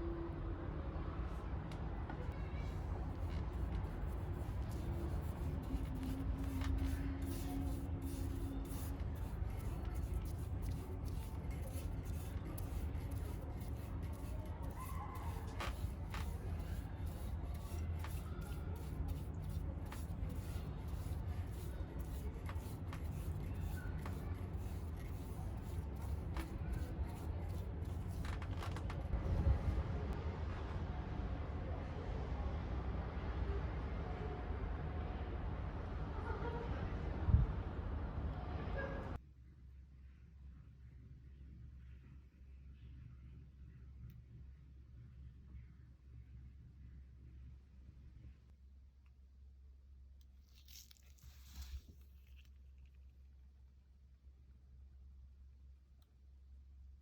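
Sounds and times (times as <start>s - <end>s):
steady low rumble: 0.0s - 50.2s
faint engine hum: 0.0s - 57.0s
brushing strokes on wooden handle: 3.4s - 28.4s.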